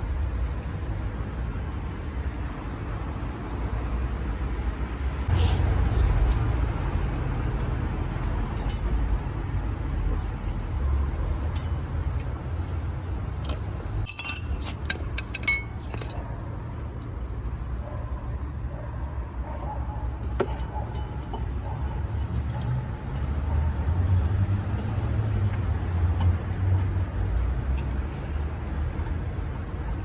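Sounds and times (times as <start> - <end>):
metal tools clinking: 6.3 - 17.8, 20.1 - 23.4.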